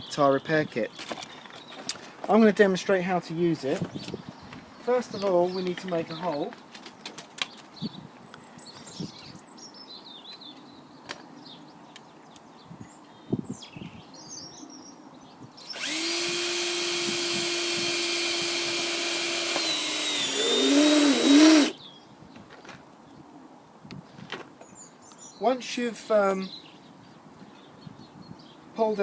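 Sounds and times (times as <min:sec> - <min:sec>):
power drill drilling: 0:15.6 - 0:21.8.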